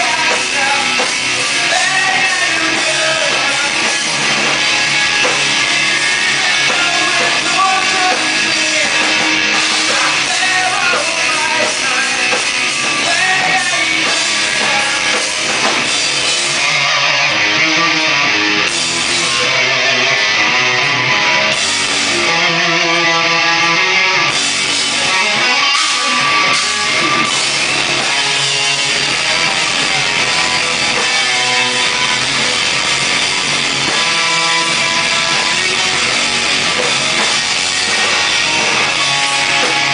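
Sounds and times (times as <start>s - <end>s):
person singing: 0.0s - 15.6s, 25.1s - 29.6s
distorted electric guitar: 0.0s - 39.9s
drum kit: 0.0s - 39.9s.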